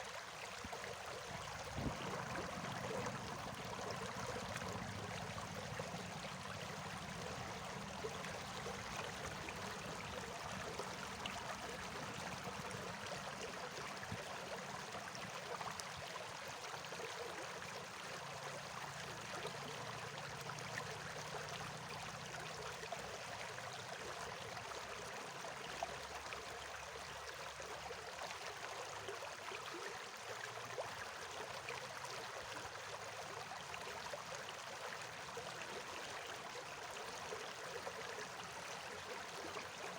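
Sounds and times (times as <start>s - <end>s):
water flowing: 0.0s - 28.4s.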